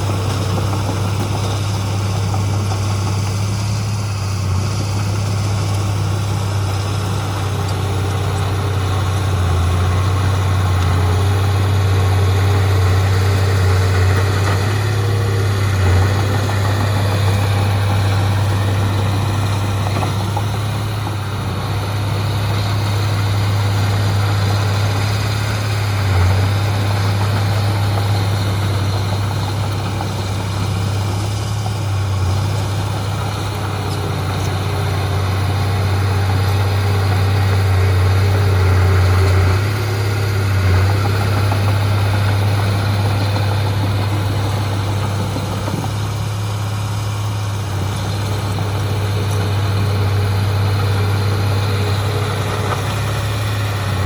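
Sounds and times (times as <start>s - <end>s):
heavy diesel engine humming: 0.0s - 54.0s.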